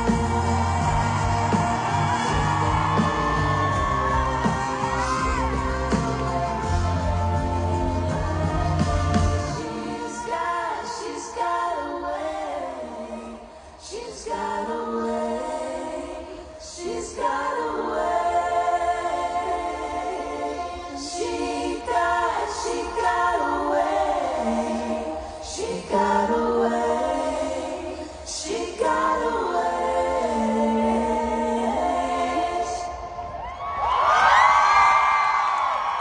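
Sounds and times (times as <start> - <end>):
steady low bass: 0.0 - 9.6
choir-like female vocal harmonies: 0.0 - 34.9.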